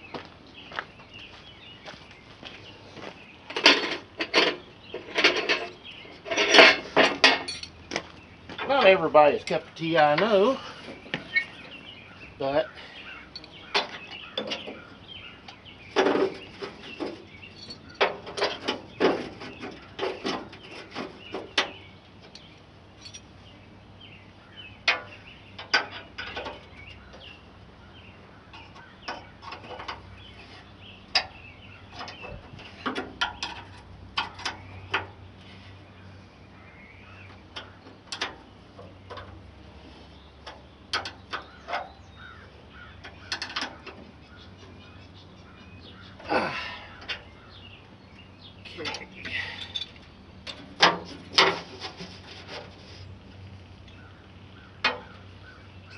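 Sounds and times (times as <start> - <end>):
metallic clanks of hand tools: 3.6 - 7.8.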